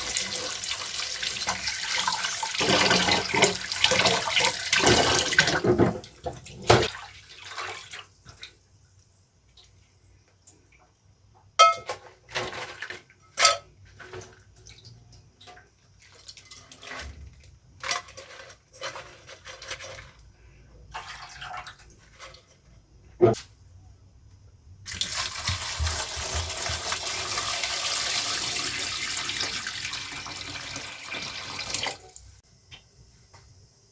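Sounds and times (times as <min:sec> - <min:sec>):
tap water running: 0:00.0 - 0:11.6, 0:24.9 - 0:32.8
pots and dishes clinking: 0:11.6 - 0:14.2.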